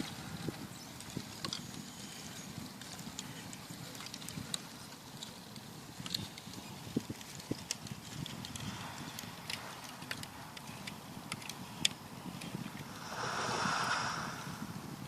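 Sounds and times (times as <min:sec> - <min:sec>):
low rumble: 0:12.8 - 0:14.8
rush of noise: 0:12.8 - 0:15.0.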